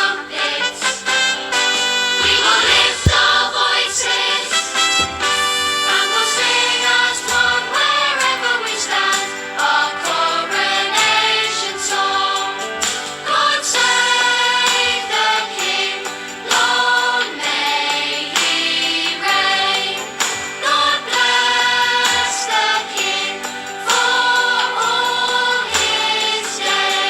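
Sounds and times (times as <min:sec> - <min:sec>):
choir singing music: 0:00.0 - 0:27.0.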